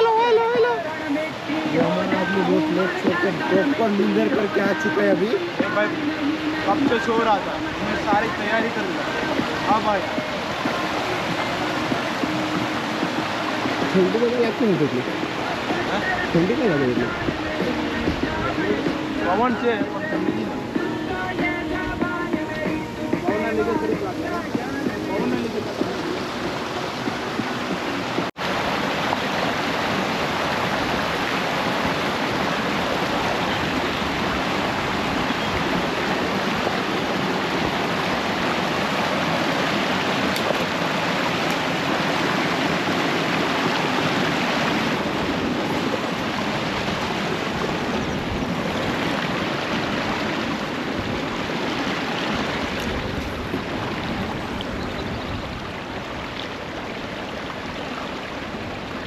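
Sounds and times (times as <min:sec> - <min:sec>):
flowing water rushing: 0:00.0 - 0:59.0.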